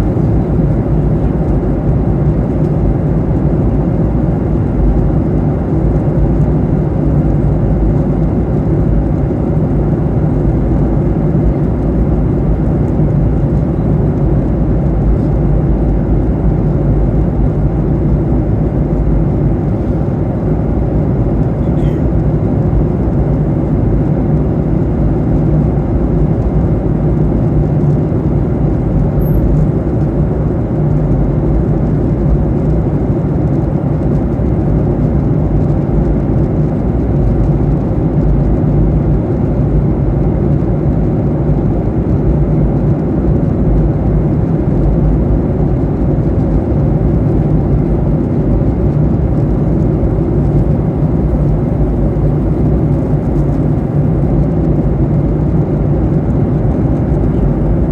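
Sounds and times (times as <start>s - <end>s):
jet engines rumbling: 0.0s - 57.9s.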